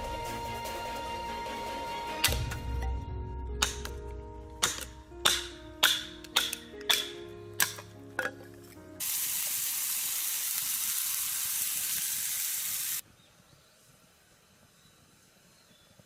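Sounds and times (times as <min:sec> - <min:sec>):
music with sharp struck notes: 0:00.0 - 0:08.3
food sizzling in a pan: 0:09.0 - 0:13.0.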